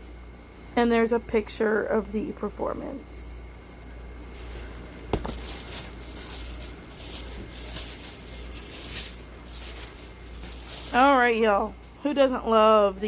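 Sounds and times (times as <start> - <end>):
plastic packaging crinkling: 4.2 - 13.0.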